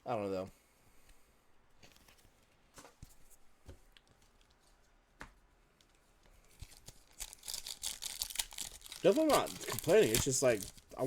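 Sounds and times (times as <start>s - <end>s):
trading cards tapping and rustling: 6.5s - 11.0s.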